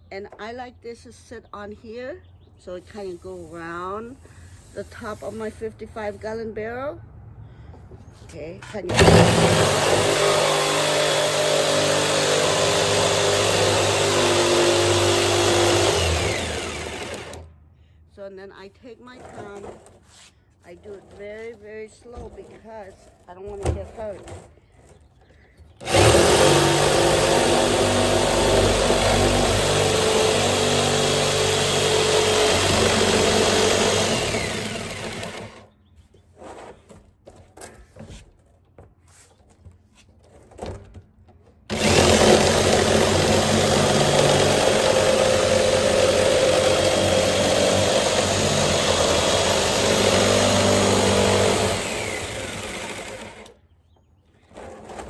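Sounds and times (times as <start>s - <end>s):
electric jigsaw cutting: 8.9s - 17.5s, 25.8s - 35.7s, 41.7s - 53.6s.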